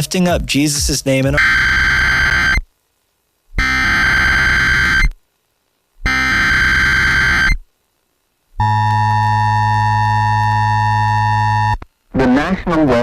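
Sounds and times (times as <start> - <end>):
buzzy two-tone attention signal: 0.8 - 2.7, 3.5 - 5.2, 6.0 - 7.7, 8.6 - 12.5
warbling digital data tones: 1.3 - 2.6, 3.6 - 5.2, 6.0 - 7.6.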